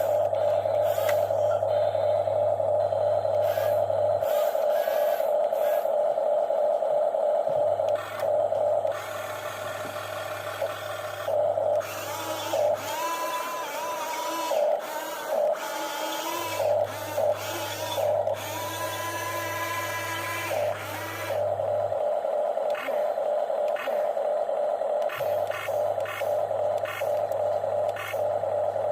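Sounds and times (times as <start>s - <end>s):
small electric motors whining: 0.0s - 28.9s.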